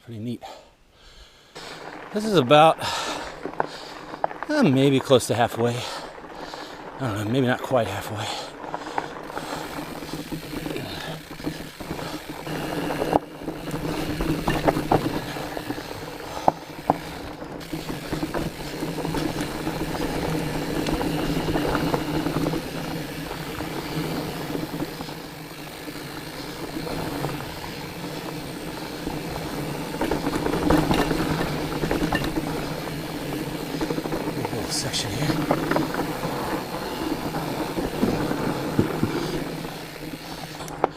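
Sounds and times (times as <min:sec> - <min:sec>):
knobby bike tyres rolling: 0:01.0 - 0:40.9
bike drivetrain rattling: 0:01.3 - 0:40.9.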